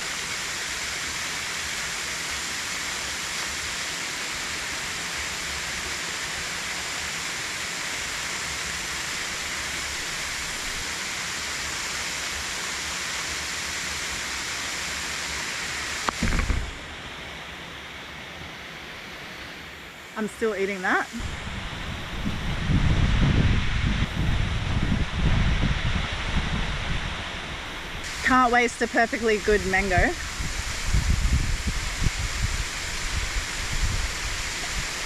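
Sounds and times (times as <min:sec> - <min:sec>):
waterfall rushing: 0:00.0 - 0:35.0
knock with low thump: 0:16.1 - 0:16.8.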